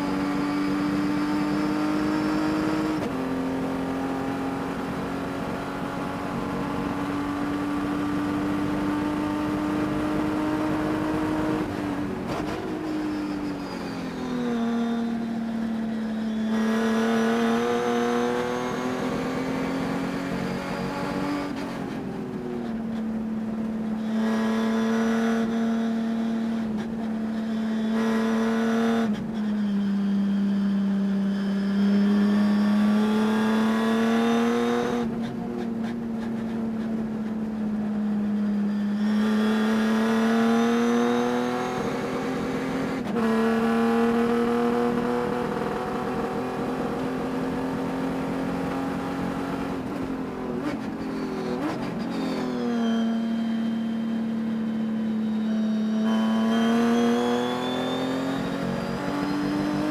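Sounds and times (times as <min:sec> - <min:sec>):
race car engine revving: 0:16.5 - 0:21.8, 0:38.7 - 0:50.9, 0:56.0 - 0:59.9.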